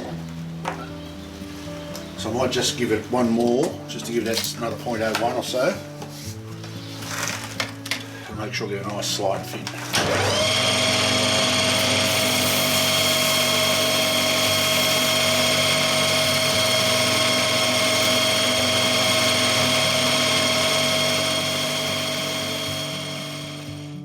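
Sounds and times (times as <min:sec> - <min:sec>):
metal lathe whining: 0:09.9 - 0:23.9.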